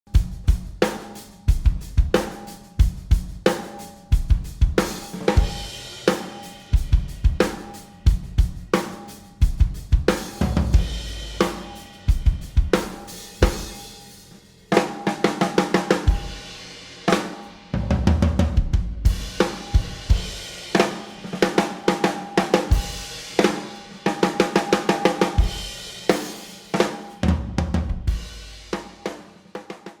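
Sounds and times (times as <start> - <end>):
bass drum: 0.1 - 3.6, 4.2 - 8.8, 9.4 - 14.0, 17.8 - 20.5, 27.2 - 29.0
low-tuned snare drum: 0.1 - 30.0
cymbals: 0.2 - 18.0, 19.0 - 27.4.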